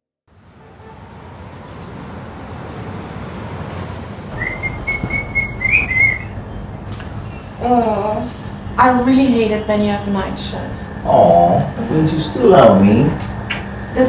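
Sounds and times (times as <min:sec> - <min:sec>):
high steady whistle: 0:04.3 - 0:07.6, 0:11.7 - 0:14.0
distant traffic rumble: 0:04.3 - 0:14.0.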